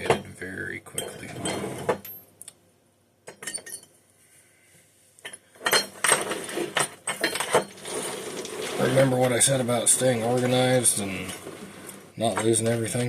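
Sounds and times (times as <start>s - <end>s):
small metal parts clinking: 3.3s - 3.9s, 5.2s - 12.7s.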